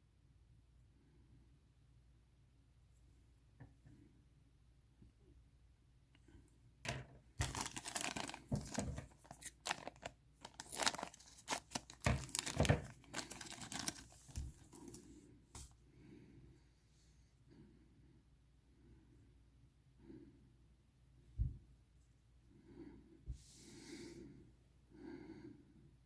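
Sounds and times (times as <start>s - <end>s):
plastic packaging crinkling: 7.4s - 15.1s.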